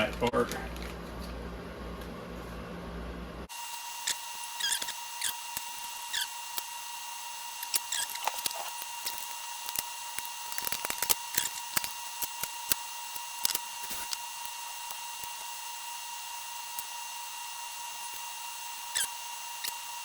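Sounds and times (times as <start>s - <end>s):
squeaks dropping in pitch: 4.0s - 5.4s, 6.0s - 6.4s, 7.6s - 8.3s
tools and plastic parts clicking: 7.6s - 15.4s.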